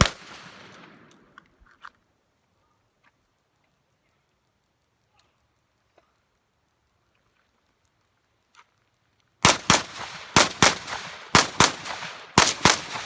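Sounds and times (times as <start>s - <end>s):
gunshots with echo: 0.0s - 1.1s, 9.4s - 13.0s.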